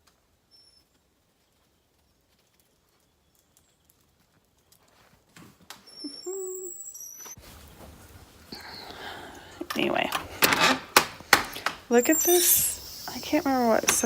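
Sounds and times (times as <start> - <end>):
faint high bird chirps: 0.5 - 0.9, 5.9 - 7.4, 11.9 - 14.0
low cooing call: 6.0 - 6.8.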